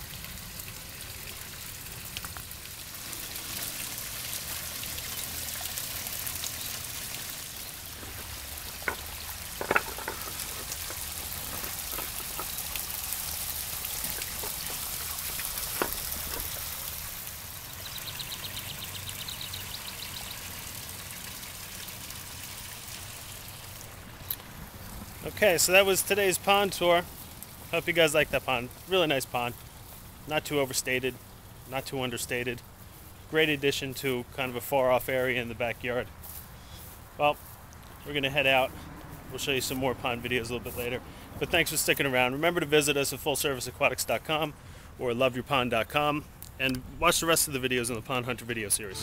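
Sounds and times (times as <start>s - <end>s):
waterfall splashing and trickling: 0.0s - 34.0s
short high trill: 48.8s - 49.0s.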